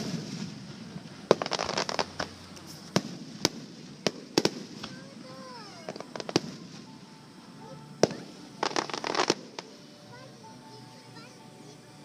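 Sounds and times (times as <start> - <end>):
crackling pops: 0.0 - 5.2, 5.8 - 6.9, 8.0 - 9.8
fireworks sharp bangs: 0.0 - 7.0, 8.0 - 9.8.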